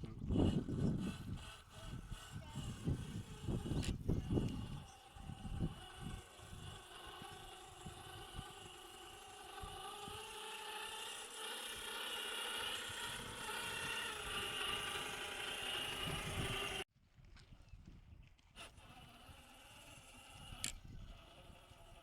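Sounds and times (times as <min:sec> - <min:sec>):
electric motor and gears whining: 0:00.0 - 0:16.8, 0:18.5 - 0:22.0.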